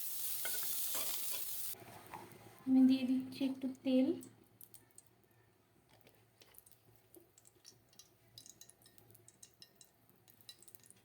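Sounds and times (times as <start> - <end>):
cooking oil crackling: 0.0 - 1.8, 6.5 - 11.0.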